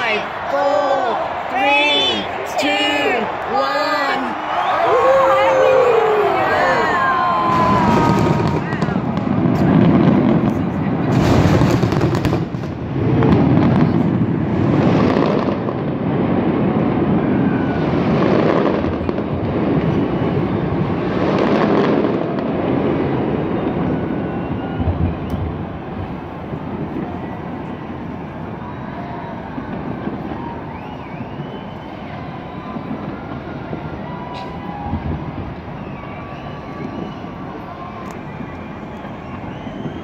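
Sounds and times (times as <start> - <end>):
fireworks bursting: 1.2 - 40.0.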